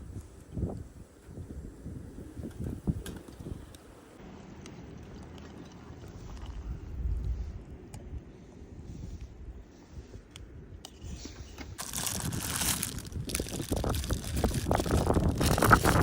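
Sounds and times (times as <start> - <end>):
strong wind gusting: 0.0 - 3.7, 11.8 - 16.0
rustling and crackling: 11.1 - 16.0.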